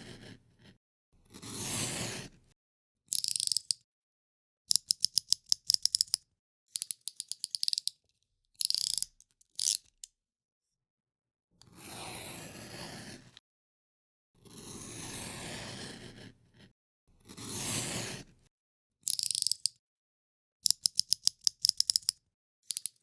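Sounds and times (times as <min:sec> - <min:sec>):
utility knife blade scraping: 0:03.1 - 0:03.8, 0:08.6 - 0:10.1
utility knife slider ratcheting clicks: 0:03.1 - 0:03.8, 0:04.7 - 0:08.0, 0:08.6 - 0:10.1, 0:19.1 - 0:19.8, 0:20.6 - 0:23.0.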